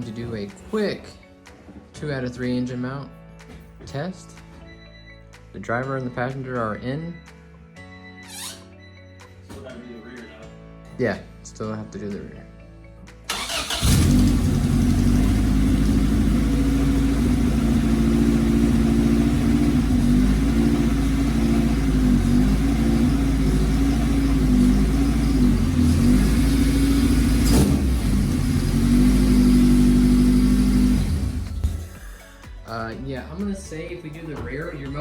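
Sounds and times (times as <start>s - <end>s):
car engine idling with throttle blips: 13.3s - 31.9s.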